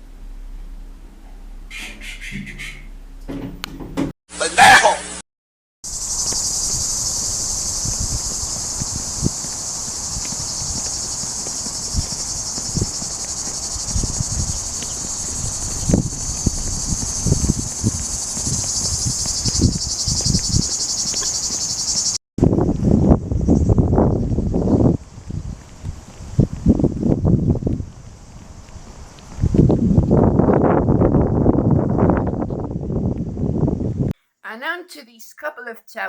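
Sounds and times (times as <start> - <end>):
low thumps: 0.0 - 4.1
insects chirring: 5.8 - 22.2, 22.9 - 32.8.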